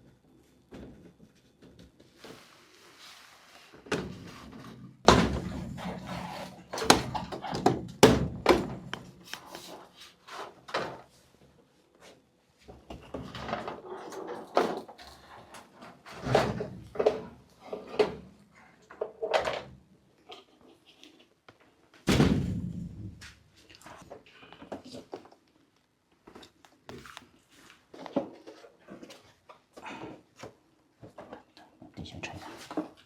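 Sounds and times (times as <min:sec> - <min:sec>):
knocks and clatter of hard parts: 0:03.9 - 0:09.2.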